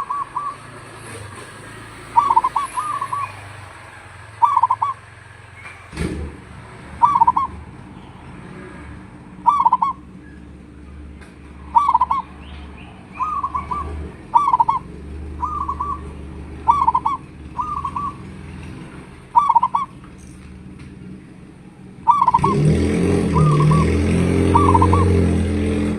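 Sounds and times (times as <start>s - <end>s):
dove cooing: 0.0s - 5.1s, 6.9s - 8.5s, 9.3s - 10.5s, 11.5s - 20.2s, 22.0s - 25.6s.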